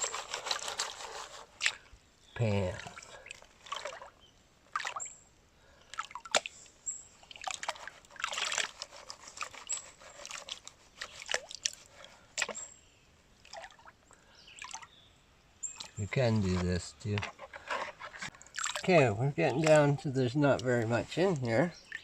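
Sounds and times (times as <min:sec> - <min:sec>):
water sloshing gravel in a pan: 0:00.0 - 0:05.0, 0:07.2 - 0:12.7, 0:15.7 - 0:22.0.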